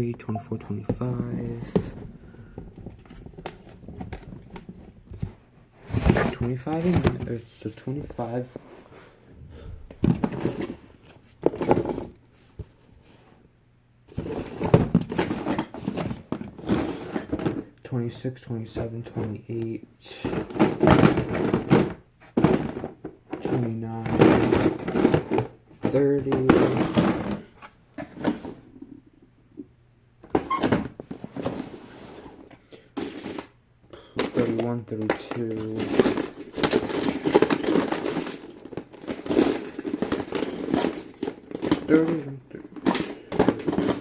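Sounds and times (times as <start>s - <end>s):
toys shuffling and sliding: 0.8s - 9.0s, 14.1s - 17.6s, 22.4s - 28.9s, 30.4s - 33.5s, 34.2s - 44.0s
plastic toys rattling: 20.2s - 28.5s, 34.2s - 44.0s.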